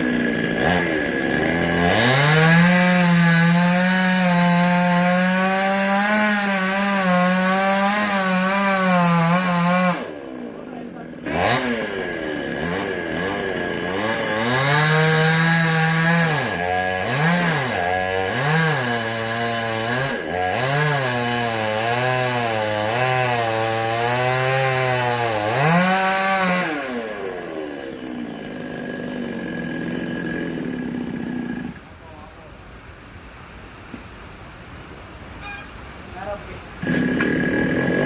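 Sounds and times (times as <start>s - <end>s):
chainsaw cutting wood: 0.0s - 31.9s, 36.8s - 38.0s.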